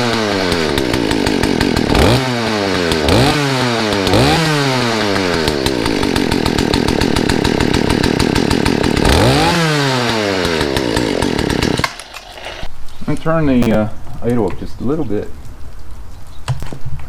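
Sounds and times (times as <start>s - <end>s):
chainsaw engine revving: 0.0s - 12.7s.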